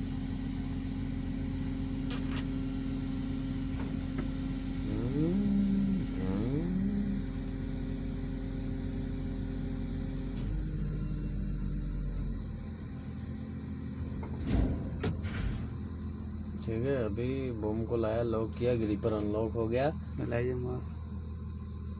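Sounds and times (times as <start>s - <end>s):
crane engine revving: 2.0s - 21.9s
sharp click: 2.1s - 2.5s.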